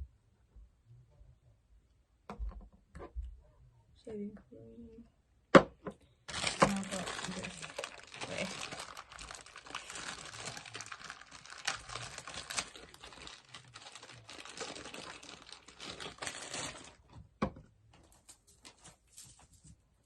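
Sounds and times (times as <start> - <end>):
clicking and crinkly rustling: 6.3 - 17.2, 17.9 - 19.9.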